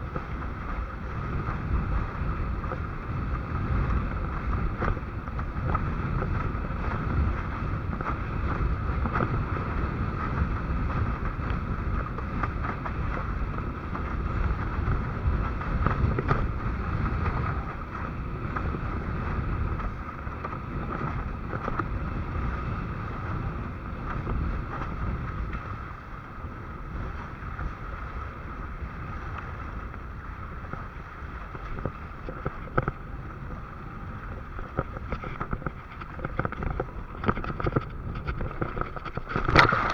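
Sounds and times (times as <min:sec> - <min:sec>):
wind buffeting microphone: 0:00.0 - 0:39.9
water rushing: 0:37.4 - 0:39.9.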